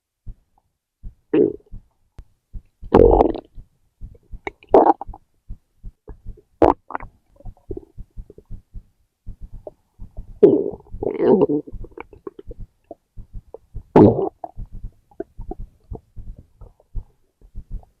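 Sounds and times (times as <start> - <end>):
stomach rumbling: 2.6 - 18.0
stomach gurgling: 2.9 - 3.5, 4.1 - 5.2, 6.1 - 8.6, 9.6 - 18.0.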